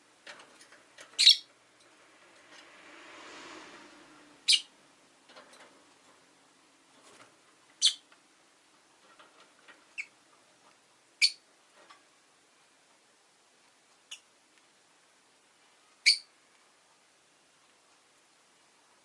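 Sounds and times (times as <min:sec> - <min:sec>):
soft background rush: 0:00.0 - 0:19.0
bird high-pitched chirps: 0:01.2 - 0:01.5, 0:04.5 - 0:04.7, 0:07.8 - 0:08.0, 0:11.2 - 0:11.4, 0:16.0 - 0:16.3.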